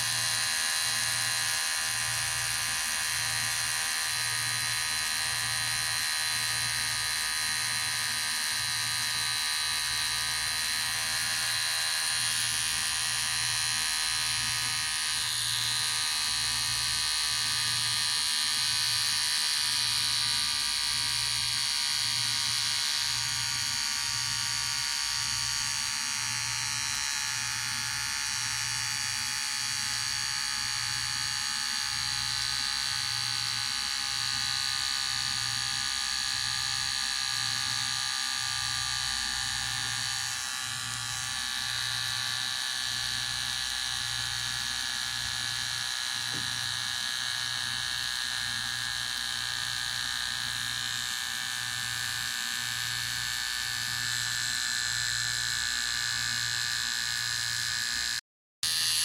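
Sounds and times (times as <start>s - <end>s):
electric hair clipper buzzing: 0.0s - 59.0s.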